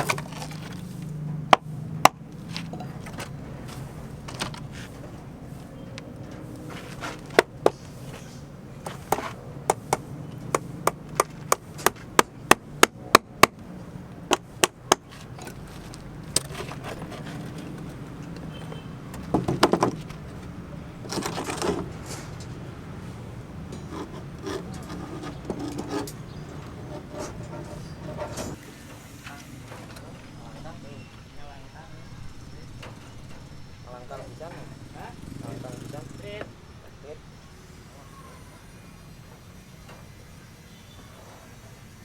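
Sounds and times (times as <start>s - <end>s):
scrape: 2.5s - 5.8s, 6.4s - 10.0s, 15.1s - 17.8s, 23.0s - 26.2s, 26.9s - 30.0s
hammer blows on wood: 6.6s - 13.6s
knocks: 18.6s - 20.2s.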